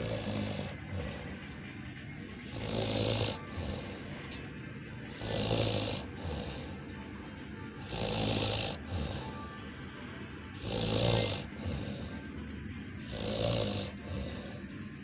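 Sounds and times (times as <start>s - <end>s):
person snoring heavily: 0.0s - 1.5s, 2.4s - 4.1s, 5.1s - 6.9s, 7.8s - 9.4s, 10.6s - 12.2s, 13.0s - 14.7s.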